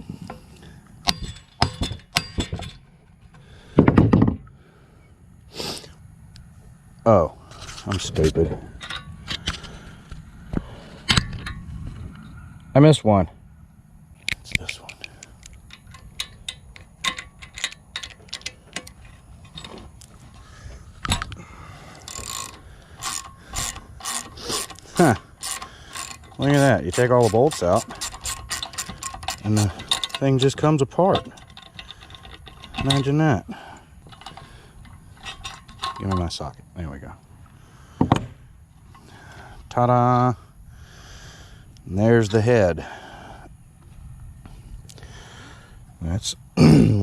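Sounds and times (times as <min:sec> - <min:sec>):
tools striking metal: 0:01.0 - 0:02.9
metal rattling clatter: 0:01.0 - 0:04.4, 0:14.7 - 0:36.5
ratchet wrench clicking: 0:14.6 - 0:19.7, 0:20.3 - 0:33.2, 0:34.0 - 0:36.3.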